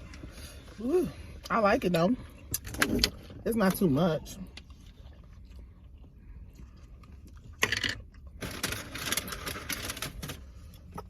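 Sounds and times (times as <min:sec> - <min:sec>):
food packaging crinkling: 0:08.4 - 0:10.6.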